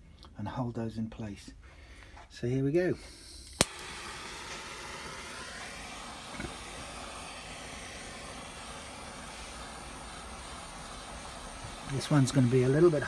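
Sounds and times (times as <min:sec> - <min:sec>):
gas torch flame hissing: 0:03.0 - 0:13.0.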